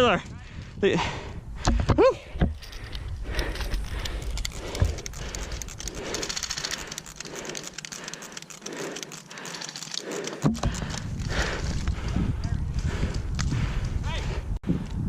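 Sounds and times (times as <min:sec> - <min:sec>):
carried gear clicking and rattling: 0:02.5 - 0:12.2.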